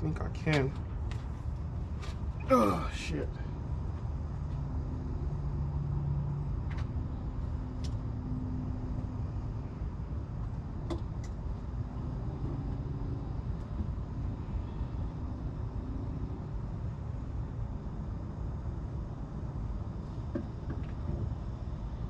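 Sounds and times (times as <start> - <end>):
low rumble of running vehicles: 0.0 - 22.0
faint hums: 1.2 - 18.1.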